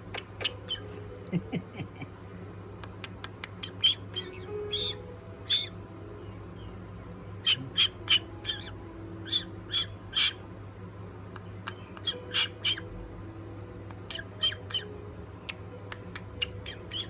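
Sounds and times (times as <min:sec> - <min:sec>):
parrot clipped calls: 0:11.6 - 0:12.9.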